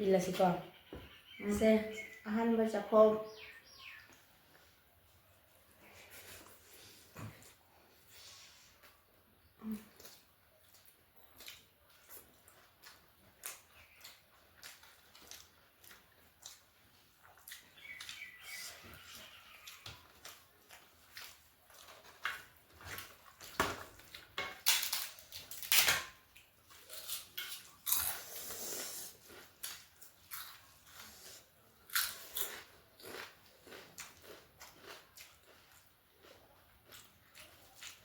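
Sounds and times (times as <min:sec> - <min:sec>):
chewing crunchy food: 0:03.9 - 0:38.0.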